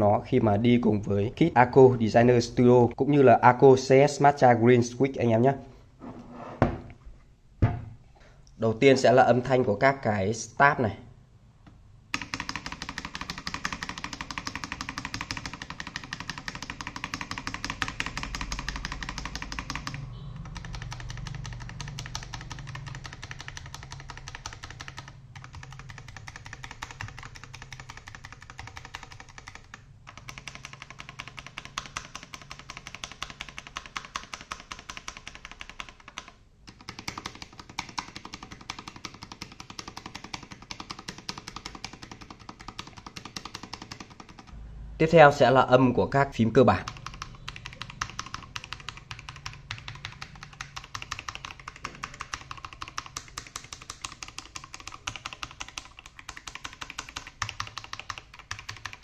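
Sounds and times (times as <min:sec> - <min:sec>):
mechanical keyboard keys clacking: 0:12.2 - 0:44.6, 0:46.8 - 0:59.0.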